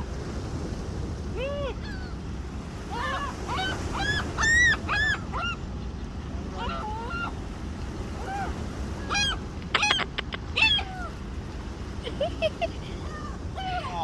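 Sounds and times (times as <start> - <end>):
low wind: 0.0 - 14.0
surf: 0.0 - 14.0
gulls squawking: 1.8 - 7.5, 8.1 - 11.3.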